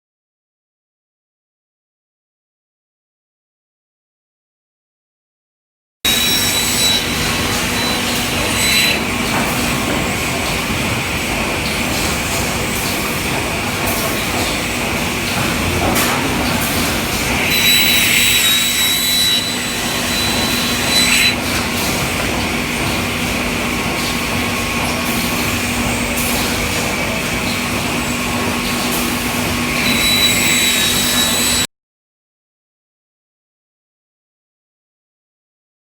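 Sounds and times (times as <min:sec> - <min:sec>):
circular saw motor humming: 0:06.1 - 0:31.7
high whine of saw cutting: 0:06.1 - 0:31.7.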